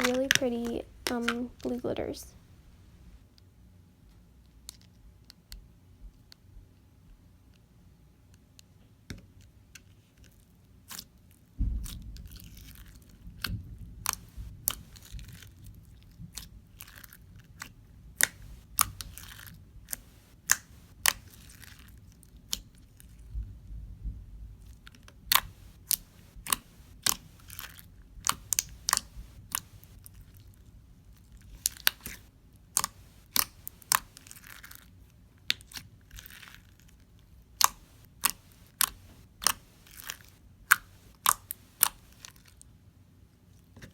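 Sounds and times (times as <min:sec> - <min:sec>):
slime squishing: 0:00.0 - 0:03.1, 0:18.2 - 0:19.4, 0:20.0 - 0:21.5, 0:25.3 - 0:27.7, 0:28.3 - 0:30.0, 0:31.6 - 0:34.6, 0:37.6 - 0:42.3
slime popping and clicking: 0:32.8 - 0:34.3, 0:37.6 - 0:42.3.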